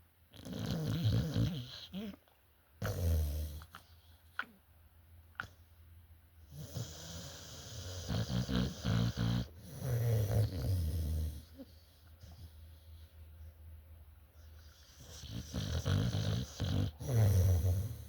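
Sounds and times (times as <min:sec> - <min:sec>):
rattling snore: 0:00.4 - 0:01.9, 0:06.6 - 0:11.5, 0:14.9 - 0:18.0
quiet breathing: 0:06.7 - 0:15.6.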